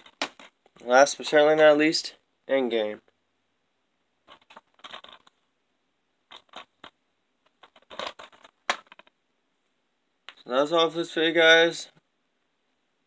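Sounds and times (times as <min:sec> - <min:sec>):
plastic cases scraping and tapping: 0:00.0 - 0:00.8, 0:04.2 - 0:05.4, 0:06.3 - 0:09.2.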